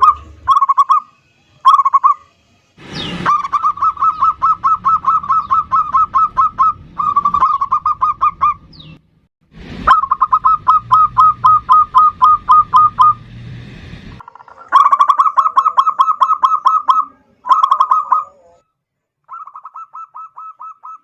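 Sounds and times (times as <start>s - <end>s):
dove cooing: 0.0s - 1.0s, 3.3s - 8.6s, 9.9s - 13.2s, 14.2s - 18.6s, 19.3s - 21.0s.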